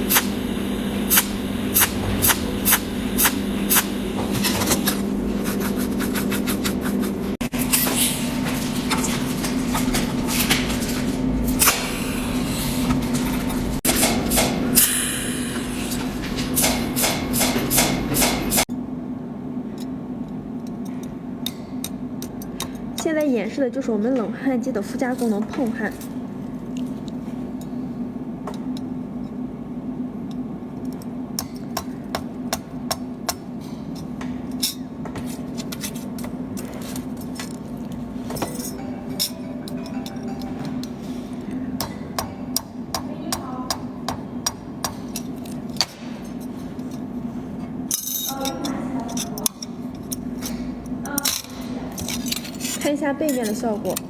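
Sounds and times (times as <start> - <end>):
low hum: 0.0 - 8.9, 36.2 - 43.0
machine hum: 0.0 - 54.0.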